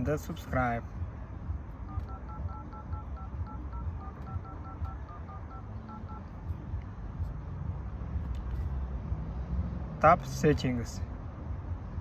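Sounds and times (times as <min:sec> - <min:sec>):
phone keypad touch tones: 0:01.8 - 0:06.5.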